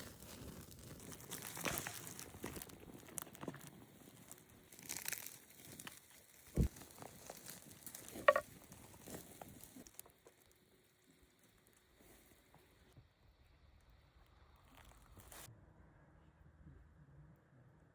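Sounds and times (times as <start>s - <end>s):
crinkling and rustling handling: 0.0s - 12.9s.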